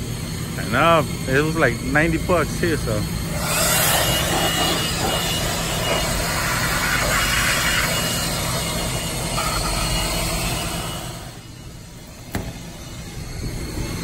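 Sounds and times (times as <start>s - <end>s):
cordless tool motor whine: 0.6s - 14.0s.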